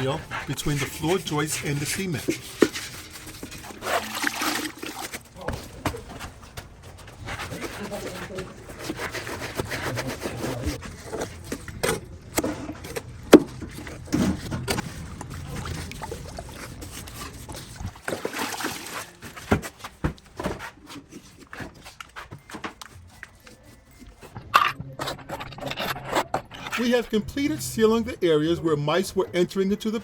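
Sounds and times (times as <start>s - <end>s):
hand tools scraping cement: 0.0s - 24.4s.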